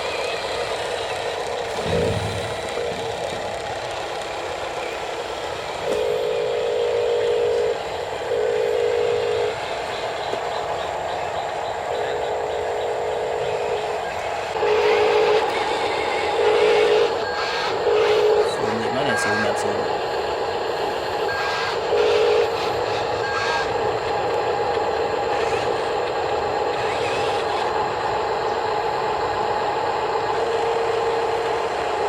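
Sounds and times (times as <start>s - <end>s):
steady mechanical hiss: 0.0s - 32.0s.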